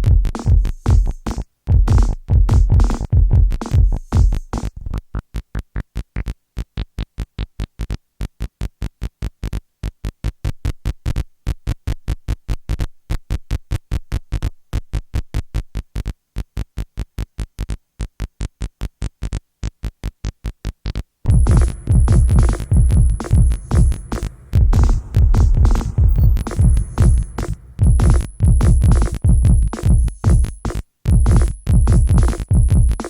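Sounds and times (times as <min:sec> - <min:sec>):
drum machine beat: 0:00.0 - 0:04.8, 0:21.3 - 0:33.0
synthesizer staccato notes: 0:21.3 - 0:33.0.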